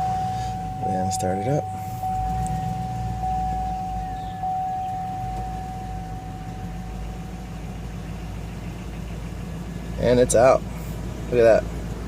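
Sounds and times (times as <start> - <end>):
steady high tone: 0.0 - 8.0
car engine idling: 0.0 - 12.0.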